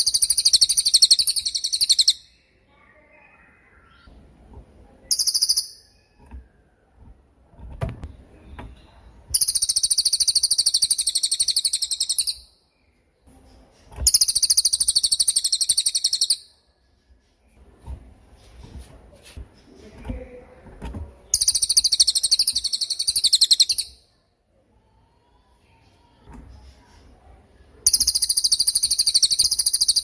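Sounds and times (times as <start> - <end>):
songbird high-pitched trills: 0.0 - 2.3, 5.1 - 6.2, 14.1 - 16.5, 21.3 - 24.0, 27.9 - 30.0.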